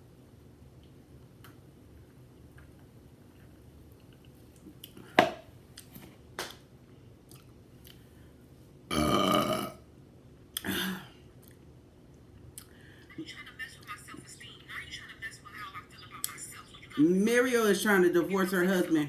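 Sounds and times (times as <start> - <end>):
woman burping: 8.9 - 9.8, 10.6 - 11.1.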